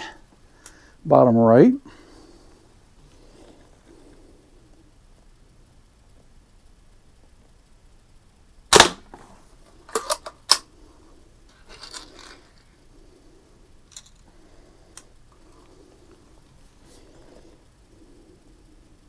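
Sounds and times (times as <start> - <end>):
bb gun shot pop: 8.7 - 9.2.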